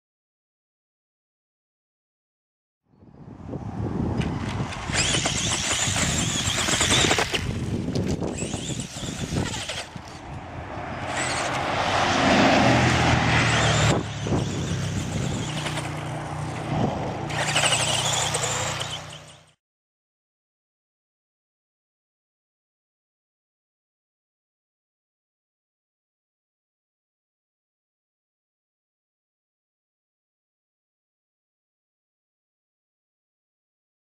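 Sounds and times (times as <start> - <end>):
rc car motor and gear whine: 4.2 - 11.7, 13.4 - 19.6.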